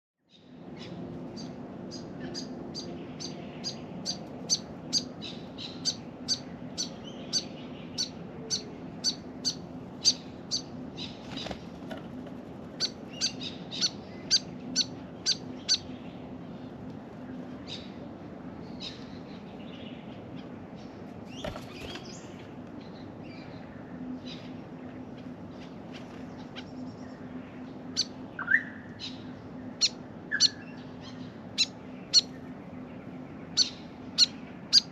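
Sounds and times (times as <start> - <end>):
low steady hum: 0.2 - 34.9
bird chirping: 0.3 - 11.7, 12.8 - 16.3, 25.5 - 34.9
other birds calling: 0.7 - 16.8, 18.7 - 34.9.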